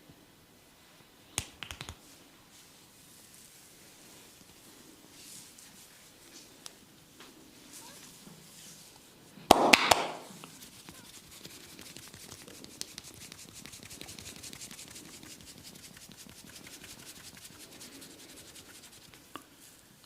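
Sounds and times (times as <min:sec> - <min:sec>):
fingers scratching through hair: 0:01.4 - 0:02.0, 0:10.4 - 0:19.3
sharp smacks: 0:01.4 - 0:02.0, 0:09.5 - 0:10.3.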